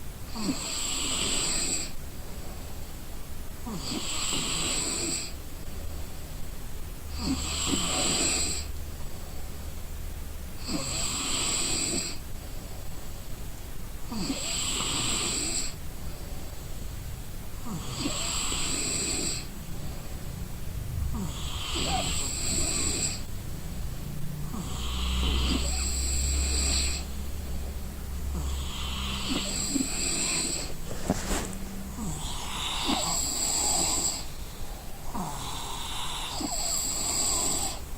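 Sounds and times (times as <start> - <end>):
person snoring: 7.1 - 8.7, 14.1 - 15.8, 17.6 - 20.0, 21.0 - 23.3, 24.4 - 27.2, 28.2 - 37.9.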